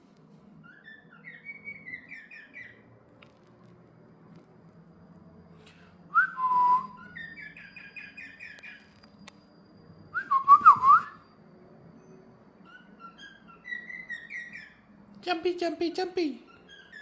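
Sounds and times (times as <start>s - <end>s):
warbled bird chirps: 0.6s - 2.9s, 6.8s - 17.0s
cockatiel whistling: 6.2s - 8.9s, 10.2s - 11.3s.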